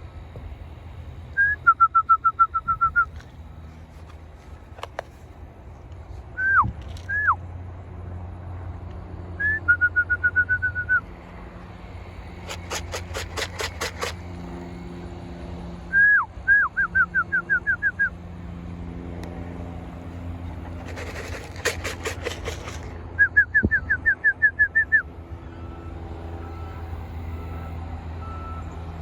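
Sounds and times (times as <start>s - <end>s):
short falling whistles: 1.4s - 3.2s, 6.4s - 7.4s, 9.4s - 11.0s, 15.9s - 18.1s, 23.2s - 25.8s
feed can rattling: 12.4s - 14.3s, 20.5s - 23.0s.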